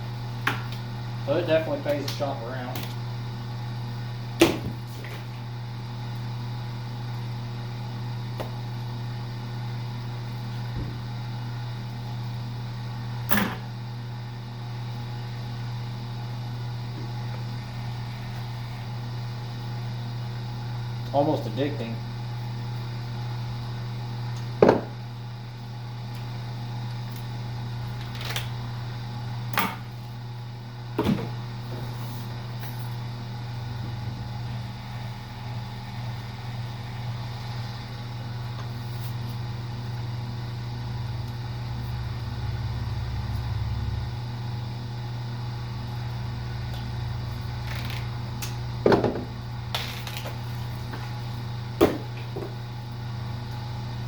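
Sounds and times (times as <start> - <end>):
wire stripping machine motor hum: 0.0 - 21.2, 22.3 - 54.0.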